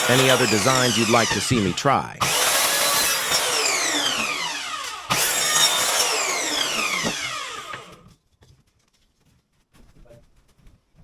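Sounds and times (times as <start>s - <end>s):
power saw cutting wood: 0.0s - 8.1s.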